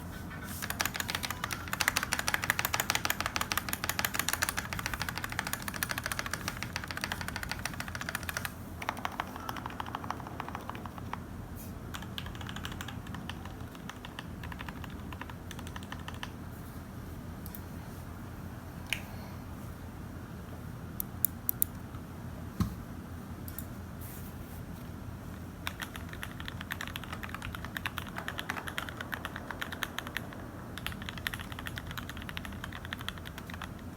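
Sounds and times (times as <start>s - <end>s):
mechanical keyboard typing: 0.6s - 11.3s, 11.9s - 16.4s, 25.6s - 33.9s.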